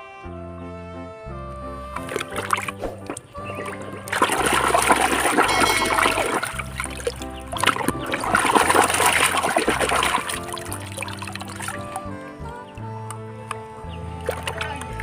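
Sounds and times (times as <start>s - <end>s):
background music with bass line: 0.0s - 15.0s
water splashing and spraying: 2.0s - 12.1s, 14.2s - 15.0s.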